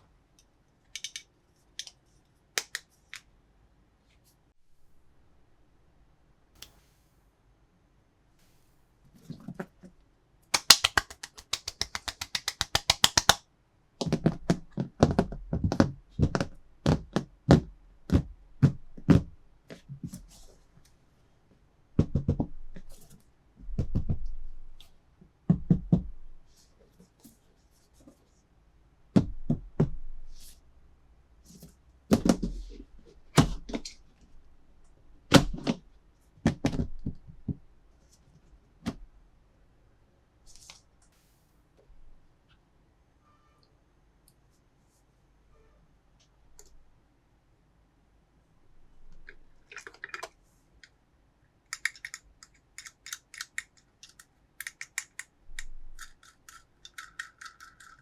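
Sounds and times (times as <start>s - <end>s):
fast plastic clicks: 10.6s - 13.4s, 51.7s - 58.0s
small hard objects knocking: 56.0s - 58.0s.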